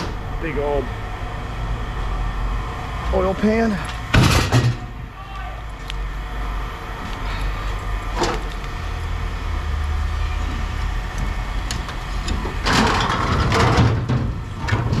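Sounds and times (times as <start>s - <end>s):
low engine rumble: 0.0s - 15.0s.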